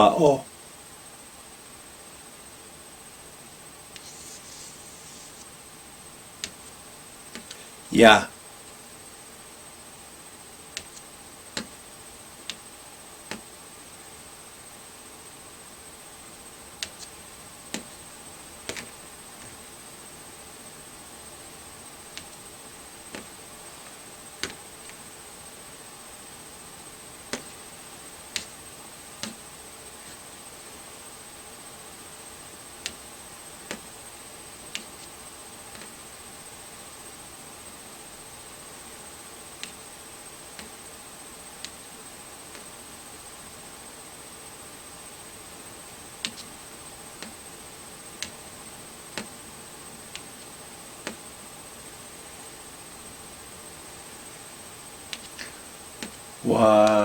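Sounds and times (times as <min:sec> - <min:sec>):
faint high-pitched whine: 0:00.0 - 0:57.0
pointer tapping on wall chart: 0:11.6 - 0:11.8, 0:29.2 - 0:29.4.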